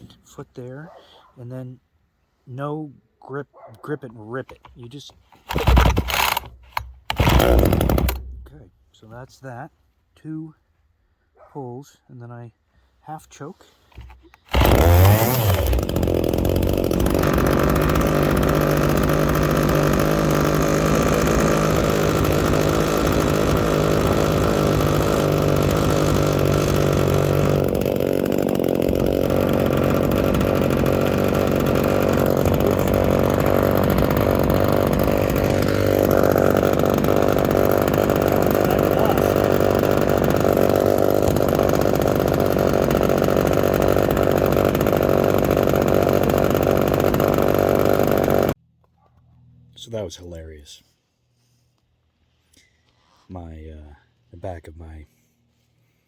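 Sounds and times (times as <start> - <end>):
chainsaw engine running: 5.3 - 8.5, 13.9 - 48.6.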